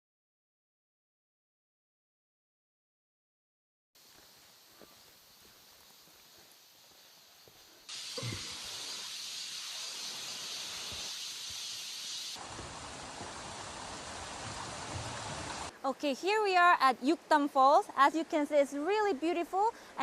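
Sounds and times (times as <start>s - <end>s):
mountain stream rushing: 7.9s - 15.7s.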